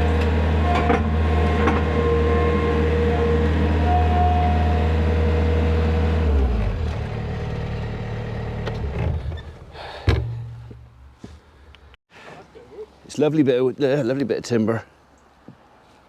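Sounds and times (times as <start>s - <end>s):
skid steer engine running: 0.0s - 10.3s.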